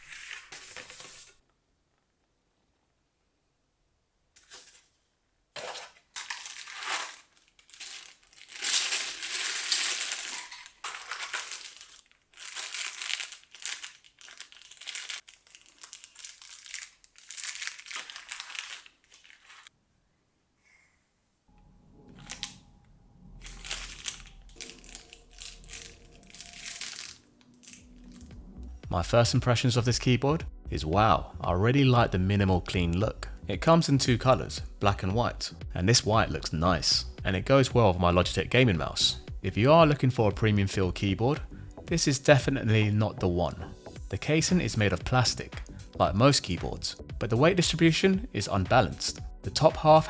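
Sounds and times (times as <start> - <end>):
packaging crinkling and rustling: 5.6 - 19.7, 22.1 - 22.7, 23.3 - 28.4.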